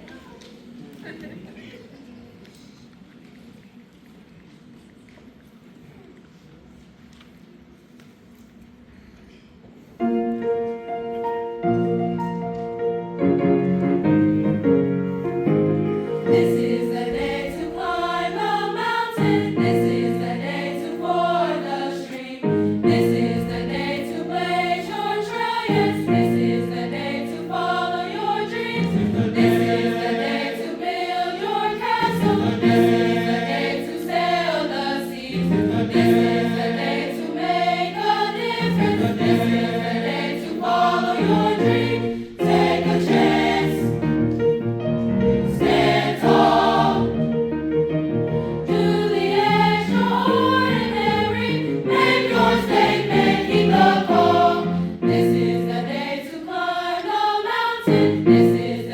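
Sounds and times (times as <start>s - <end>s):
choir singing: 15.4s - 44.4s, 45.2s - 47.4s, 48.5s - 58.9s.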